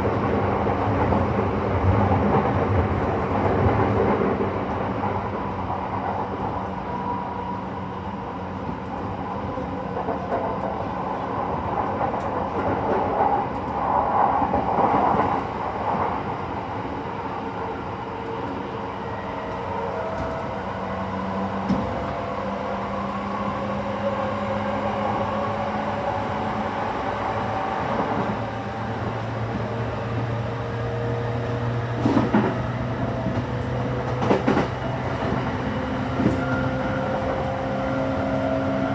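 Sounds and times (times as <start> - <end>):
train wheels rumbling on rails: 0.0 - 38.9.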